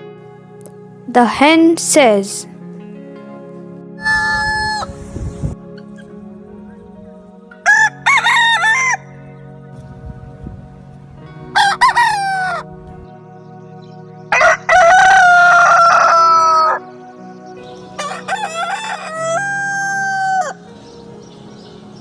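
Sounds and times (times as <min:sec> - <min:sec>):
rooster crowing: 0:04.0 - 0:04.9, 0:07.6 - 0:09.1, 0:11.6 - 0:12.6, 0:14.3 - 0:16.8, 0:18.0 - 0:20.6.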